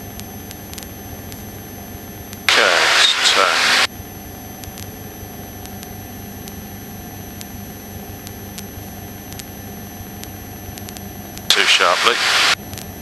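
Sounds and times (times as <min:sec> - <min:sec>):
high electrical whine: 0:00.0 - 0:03.9, 0:08.1 - 0:13.0.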